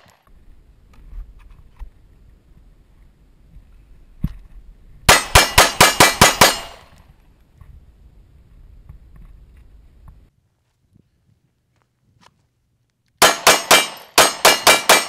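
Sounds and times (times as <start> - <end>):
pistol shots: 5.1 - 6.9, 13.2 - 15.0.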